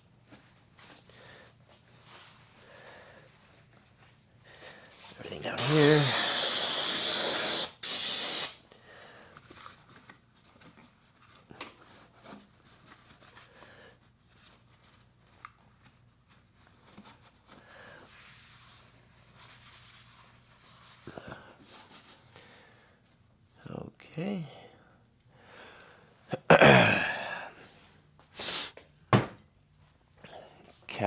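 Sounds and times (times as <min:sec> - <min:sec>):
aerosol spray hissing: 0:05.6 - 0:08.6.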